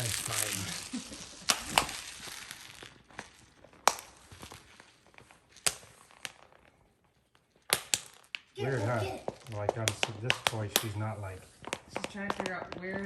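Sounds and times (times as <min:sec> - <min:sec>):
chew toy crunches and crackles: 0:00.0 - 0:00.8.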